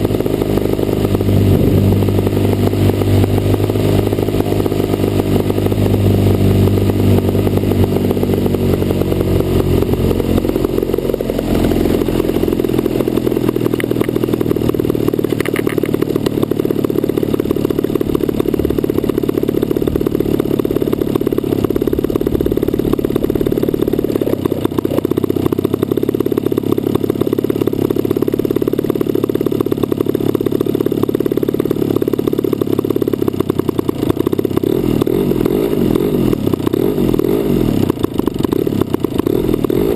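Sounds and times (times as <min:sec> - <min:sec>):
model airplane engine revving: 0:00.0 - 0:39.9.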